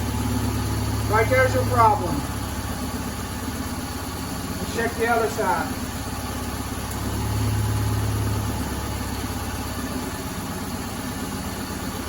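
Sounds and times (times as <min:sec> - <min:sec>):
car engine idling roughly: 0:00.0 - 0:12.0.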